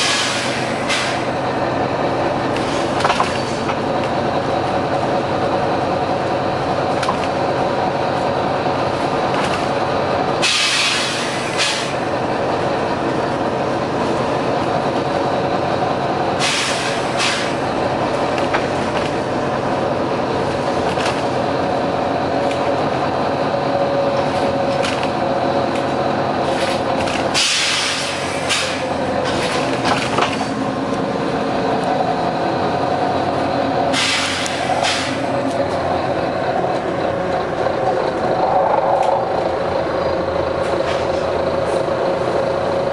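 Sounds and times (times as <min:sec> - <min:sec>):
pneumatic air hisses: 0:00.0 - 0:01.3, 0:10.4 - 0:11.9, 0:16.4 - 0:17.6, 0:27.4 - 0:28.8, 0:34.0 - 0:35.2
bus diesel engine running: 0:00.0 - 0:42.9.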